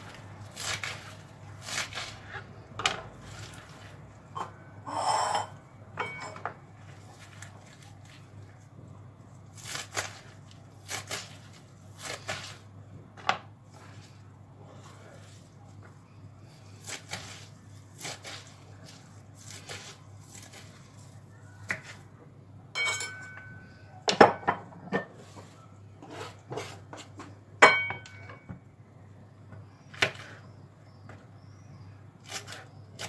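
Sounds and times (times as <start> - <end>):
dishes and cutlery clattering: 4.3 - 6.5, 22.8 - 25.2.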